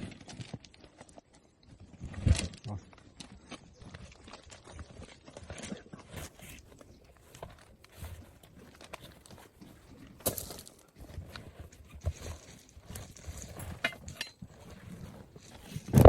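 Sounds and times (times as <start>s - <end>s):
tools and parts clattering: 10.2s - 16.0s.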